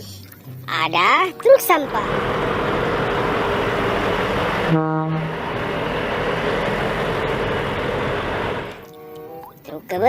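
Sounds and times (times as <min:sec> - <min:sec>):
truck engine running: 0:01.4 - 0:08.9
truck horn honk: 0:04.6 - 0:05.4.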